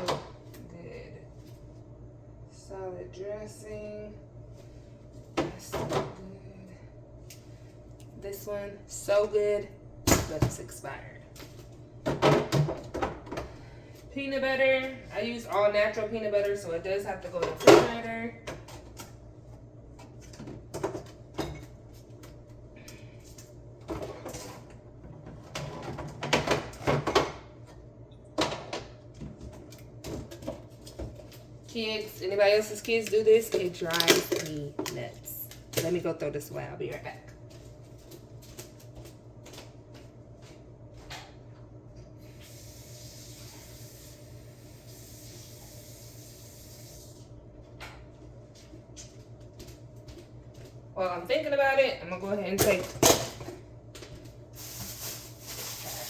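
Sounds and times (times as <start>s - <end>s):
constant low hum: 0.0s - 56.0s
food containers knocking and clattering: 12.0s - 13.5s, 20.0s - 21.7s, 23.8s - 27.4s.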